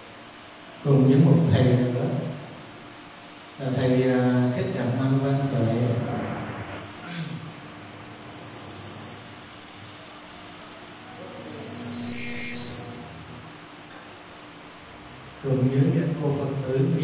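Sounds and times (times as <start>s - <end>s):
microphone feedback whistle: 0.0s - 14.0s.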